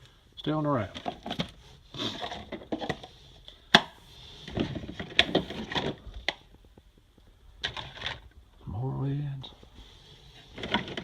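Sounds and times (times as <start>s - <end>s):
plastic containers clattering: 0.8s - 6.6s, 7.6s - 8.4s, 10.3s - 11.0s.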